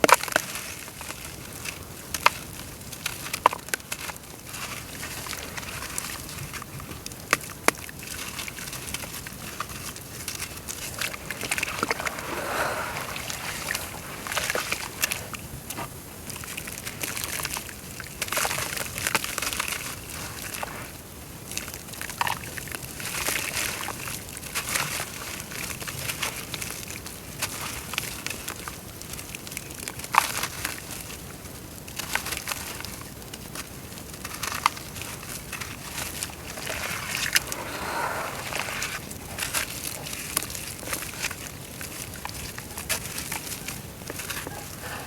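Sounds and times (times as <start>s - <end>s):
dirt crackling and fizzing in water: 0.0s - 45.0s
water sloshing: 8.5s - 17.6s, 34.8s - 45.0s.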